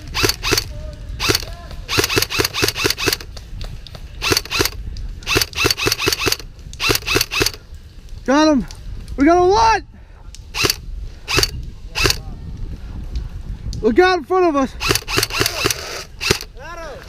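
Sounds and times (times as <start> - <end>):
airsoft guns firing: 0.0 - 3.3, 4.2 - 7.6.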